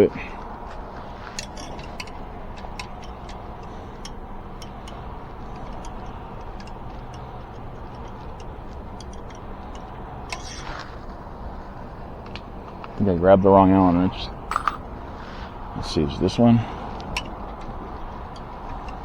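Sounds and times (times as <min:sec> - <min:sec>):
metallic tool clicks: 0:01.4 - 0:10.6, 0:14.5 - 0:14.8.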